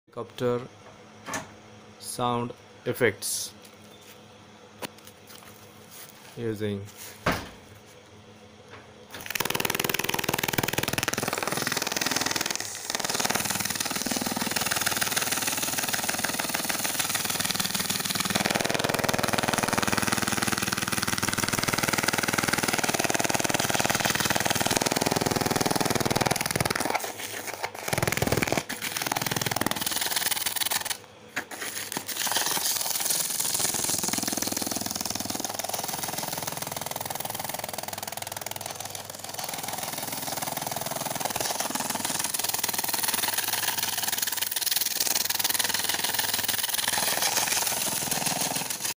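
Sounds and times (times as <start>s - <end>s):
helicopter rotor chop: 9.2s - 31.0s, 32.0s - 48.9s.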